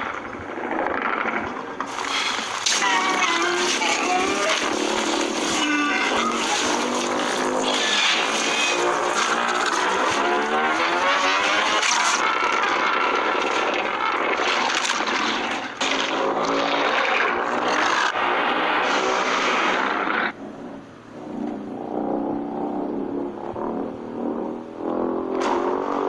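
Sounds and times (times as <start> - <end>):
rough noisy rumble: 0.0 - 26.0
monster roars and growls: 0.9 - 15.6.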